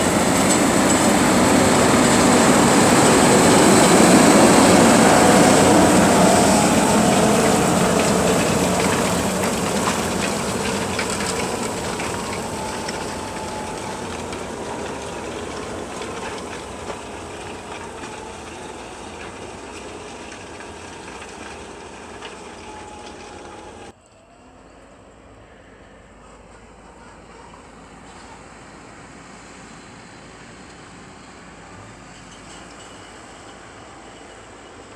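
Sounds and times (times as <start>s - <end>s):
tractor engine under load: 0.0s - 24.0s.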